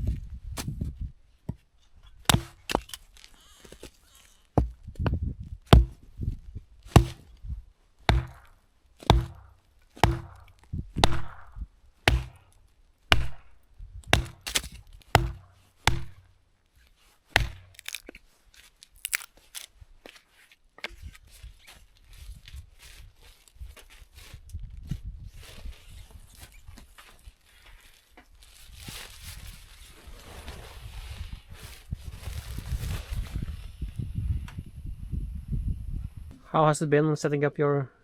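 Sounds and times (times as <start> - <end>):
axe chopping firewood: 0.6 - 0.8, 2.2 - 3.1, 4.6 - 4.8, 5.7 - 6.2, 6.9 - 7.4, 8.1 - 16.3, 17.3 - 18.2.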